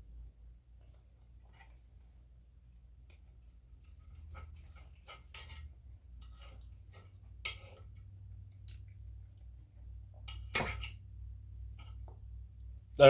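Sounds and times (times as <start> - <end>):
low steady hum: 0.0 - 13.0
small clicks and scrapes: 3.0 - 9.1, 11.6 - 12.3.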